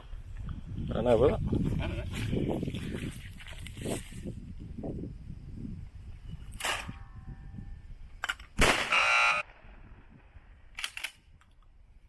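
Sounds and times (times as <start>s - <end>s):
loud buzzing: 8.7s - 9.5s.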